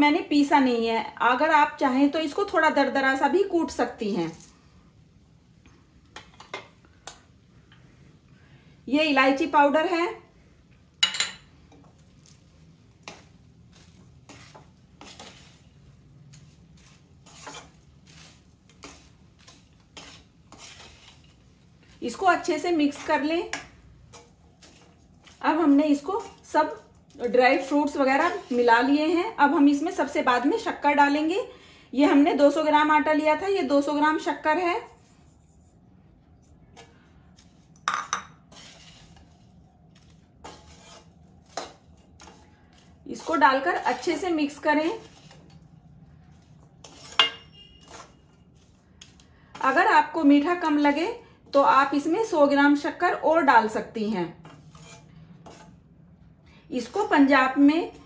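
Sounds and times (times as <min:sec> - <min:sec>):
metal utensils clinking on pan: 0:11.0 - 0:11.5, 0:46.9 - 0:48.2
spoon scraping a pan: 0:11.0 - 0:29.3, 0:36.4 - 0:45.7, 0:46.3 - 0:52.1, 0:54.3 - 0:55.9.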